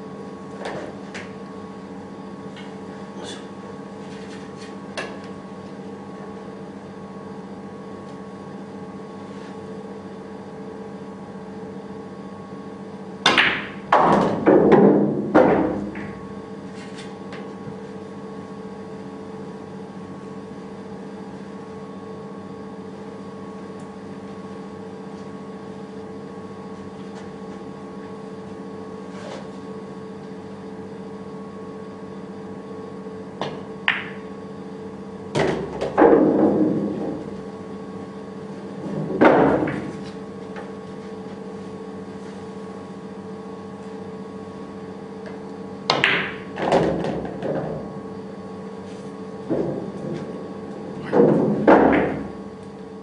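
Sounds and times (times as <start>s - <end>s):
electrical hum: 0.0s - 53.0s
cue tapping balls: 13.2s - 16.3s, 33.4s - 34.3s, 35.4s - 37.5s, 38.5s - 40.8s, 45.2s - 48.0s, 49.4s - 52.5s
billiard balls clicking: 33.9s - 34.2s.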